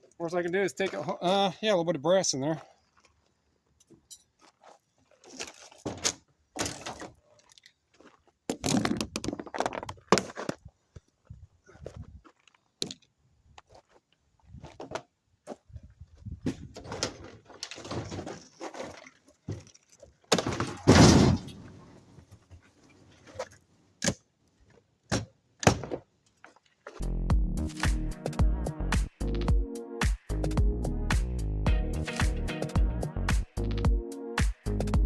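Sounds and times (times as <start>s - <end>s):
metal and plastic parts rattling: 16.5s - 21.7s
heavy thunk: 20.3s - 21.8s.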